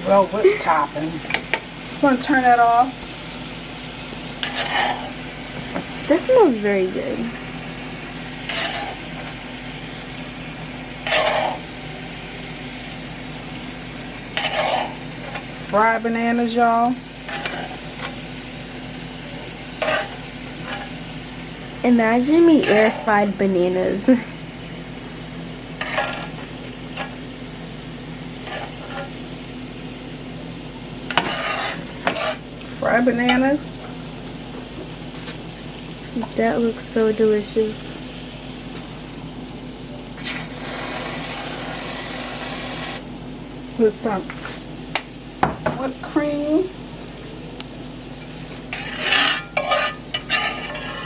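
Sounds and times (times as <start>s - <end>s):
banana slices frying in pan: 0.0s - 51.0s
steady low hum: 0.0s - 51.0s
utensil scraping pan: 4.4s - 5.2s, 8.4s - 9.3s, 11.0s - 11.8s, 14.3s - 15.4s, 17.2s - 18.2s, 19.8s - 21.0s, 22.6s - 23.1s, 25.8s - 26.4s, 28.4s - 29.2s, 31.1s - 32.4s, 48.5s - 51.0s
utensils clattering: 22.6s - 23.1s, 48.7s - 51.0s.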